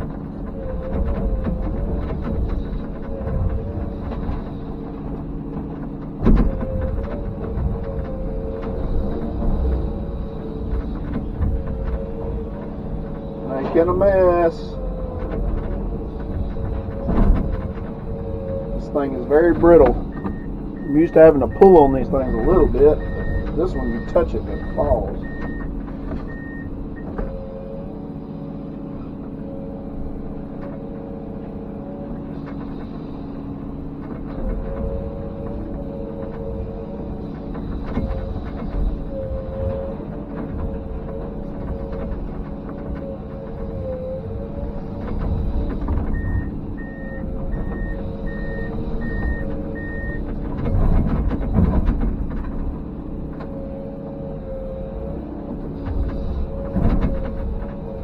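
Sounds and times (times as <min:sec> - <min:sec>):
excavator diesel engine running: 0:00.0 - 0:58.0
hydraulic whine: 0:00.0 - 0:58.0
travel alarm beeping: 0:18.8 - 0:27.2, 0:46.0 - 0:50.3.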